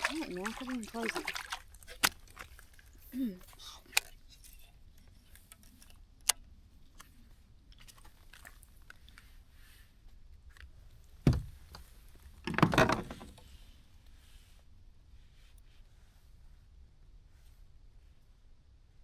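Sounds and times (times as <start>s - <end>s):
thump: 11.2s - 11.6s.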